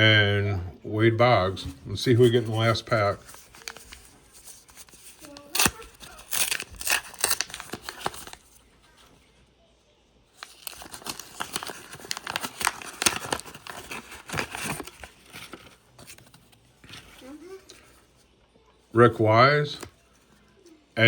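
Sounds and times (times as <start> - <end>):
wrapper crinkling and tearing: 2.4 - 8.6, 10.4 - 17.8.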